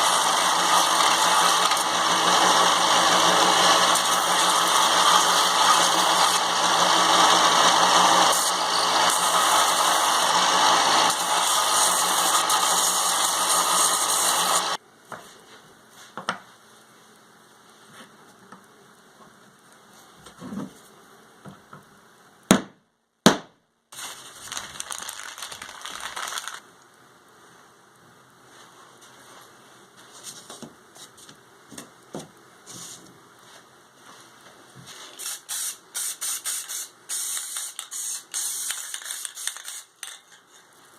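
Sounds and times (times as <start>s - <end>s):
power tool running: 0.0s - 14.8s.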